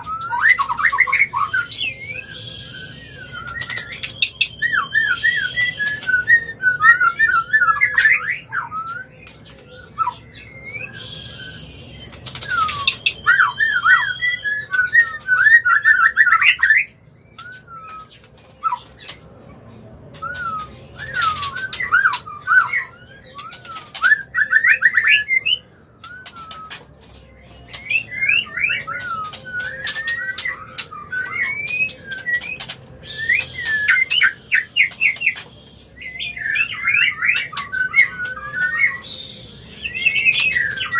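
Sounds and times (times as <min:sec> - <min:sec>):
bird chattering song: 0:00.0 - 0:40.9
bird hissing rasps: 0:01.4 - 0:03.5, 0:05.0 - 0:06.0, 0:10.9 - 0:12.1, 0:33.0 - 0:35.8, 0:39.0 - 0:39.8.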